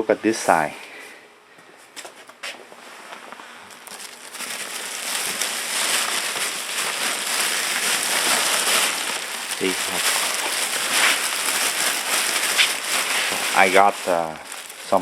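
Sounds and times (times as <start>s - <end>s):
dense crackling rustle: 3.0s - 15.0s.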